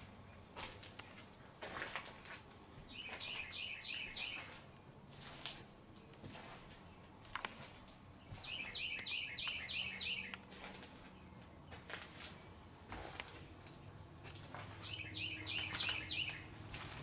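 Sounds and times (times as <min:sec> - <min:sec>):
bird chirping: 0:02.9 - 0:04.6, 0:08.2 - 0:10.5, 0:14.8 - 0:16.6.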